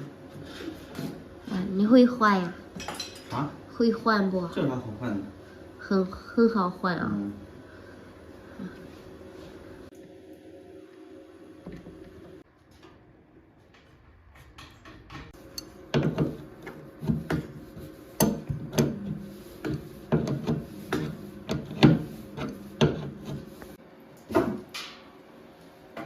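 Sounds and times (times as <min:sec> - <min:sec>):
tools knocking and clunking: 0:13.7 - 0:17.6, 0:19.6 - 0:23.4.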